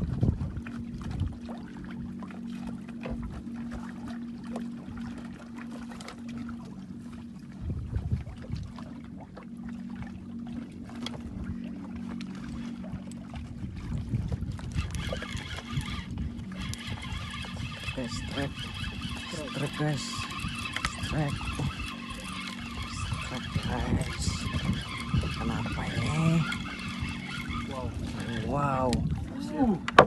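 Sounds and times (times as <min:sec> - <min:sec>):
wind noise: 0:00.0 - 0:01.6, 0:07.6 - 0:08.9, 0:12.8 - 0:30.0
boat engine humming: 0:00.0 - 0:30.0
water noise: 0:00.0 - 0:30.0.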